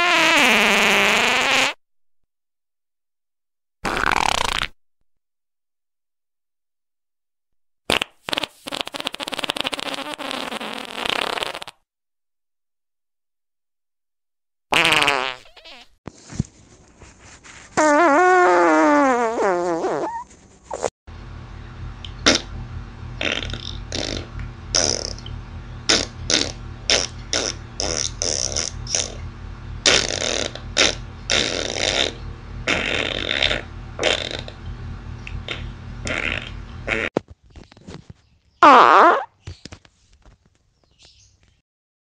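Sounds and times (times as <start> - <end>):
farts: 0.0 - 1.8, 3.8 - 4.8, 7.9 - 11.8, 14.7 - 16.0, 17.8 - 20.9, 22.2 - 22.5, 23.2 - 25.3, 25.9 - 29.2, 29.8 - 34.6, 35.4 - 37.2, 38.6 - 39.4
steady low hum: 20.4 - 37.1.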